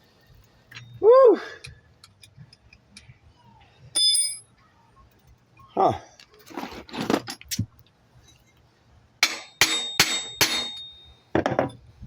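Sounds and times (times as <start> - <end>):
hammer striking metal: 9.2 - 11.0.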